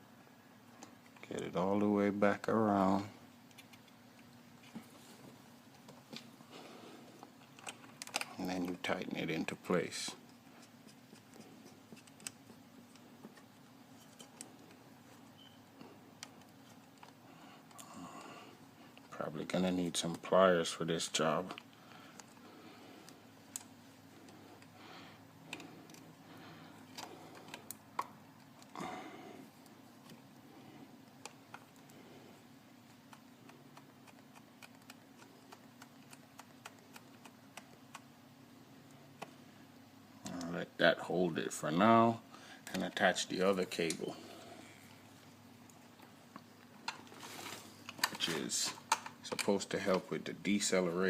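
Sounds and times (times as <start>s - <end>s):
steady low hum: 0.0s - 51.0s
faint metal parts clicking: 7.4s - 8.8s.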